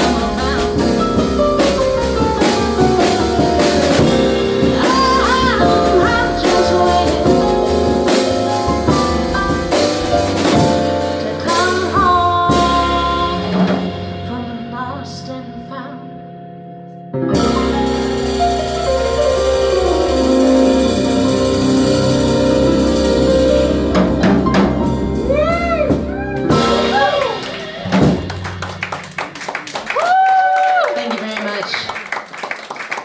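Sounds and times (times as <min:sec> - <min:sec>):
person singing: 0:00.0 - 0:01.3, 0:04.7 - 0:07.7, 0:11.2 - 0:16.2
drum kit: 0:00.0 - 0:14.9, 0:17.4 - 0:31.6
jazz trio playing: 0:00.0 - 0:16.5, 0:17.1 - 0:29.9.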